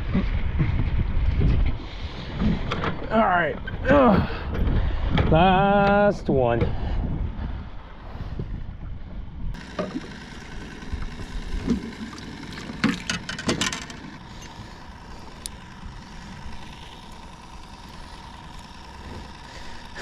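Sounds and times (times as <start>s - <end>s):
boat motor whining: 9.6s - 20.0s.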